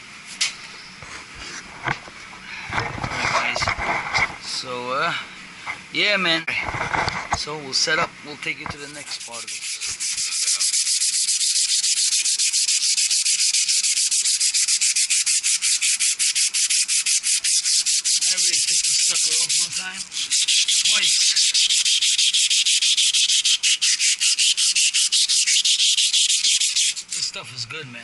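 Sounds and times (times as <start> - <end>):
sandpaper scratching metal: 8.7 - 27.5.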